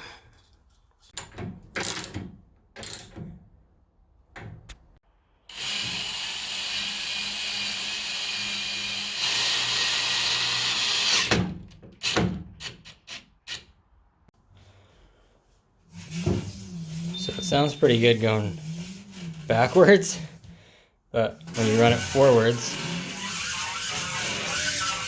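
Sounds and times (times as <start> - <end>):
power drill running: 5.5 - 11.4, 21.5 - 25.0.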